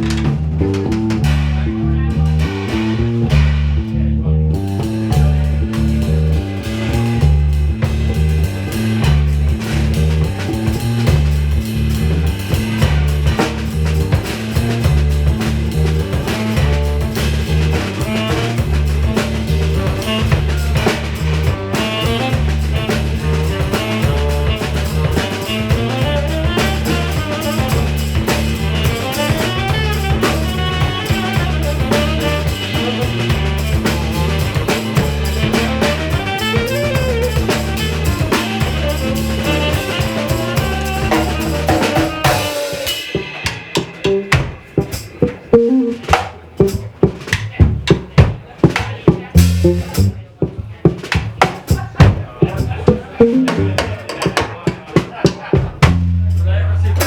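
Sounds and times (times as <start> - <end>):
drum kit: 0.0 - 57.0
repeating bass line: 44.1 - 44.4, 45.5 - 46.8, 49.4 - 50.2, 53.0 - 53.9
melodic line: 45.6 - 46.1, 53.2 - 53.8.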